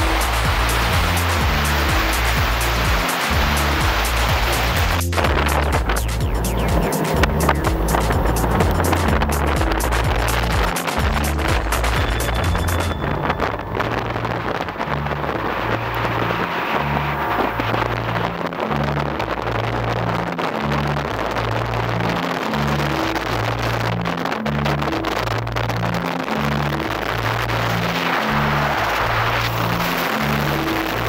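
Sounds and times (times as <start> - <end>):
background music with bass line: 0.0 - 31.0
motorboat running: 0.0 - 31.0.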